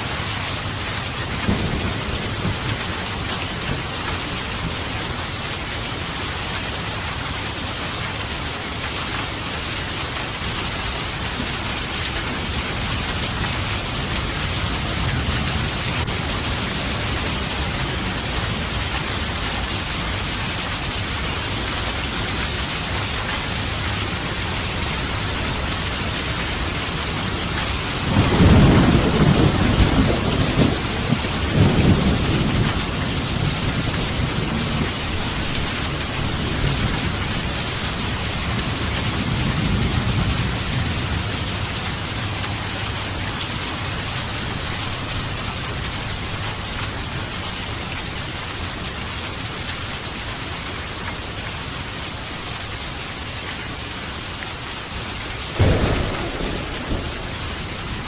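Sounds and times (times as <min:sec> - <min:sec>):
heavy rain: 0:00.0 - 0:58.0
thunder clap and rumbles: 0:00.1 - 0:05.4, 0:11.0 - 0:21.2, 0:22.4 - 0:47.2, 0:55.4 - 0:58.0.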